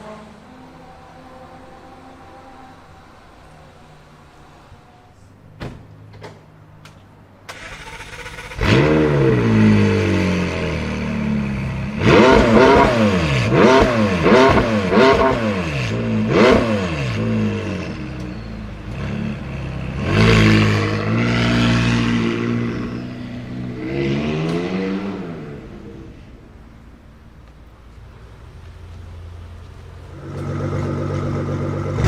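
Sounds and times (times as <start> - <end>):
car engine idling and revving: 7.5 - 32.0.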